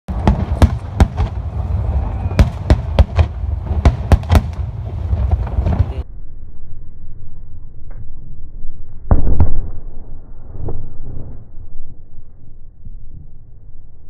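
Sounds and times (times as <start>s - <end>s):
low rumble: 0.1s - 14.0s
firework shells bursting: 2.2s - 5.9s.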